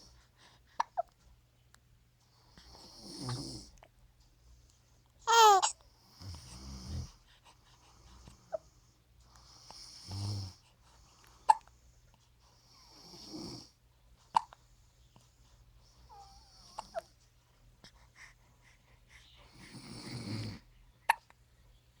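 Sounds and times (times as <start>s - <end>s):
woman snoring: 19.7s - 20.6s.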